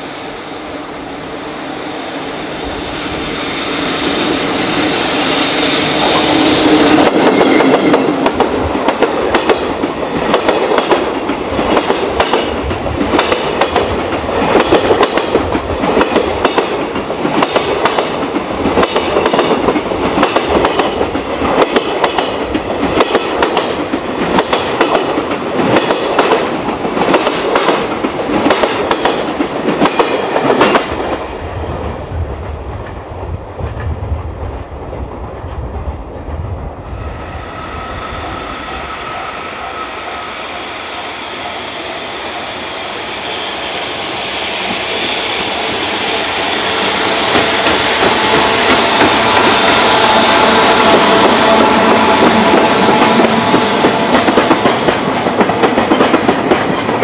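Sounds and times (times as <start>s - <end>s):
train wheels clattering over rail joints: 5.8s - 31.2s, 46.8s - 57.0s.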